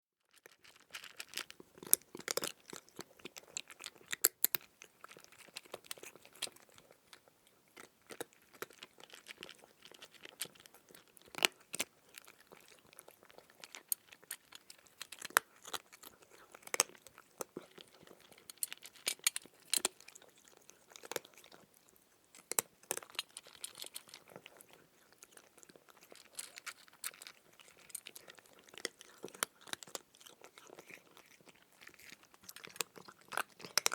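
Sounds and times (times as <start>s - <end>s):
kitten crunching dry food: 0.2s - 33.9s.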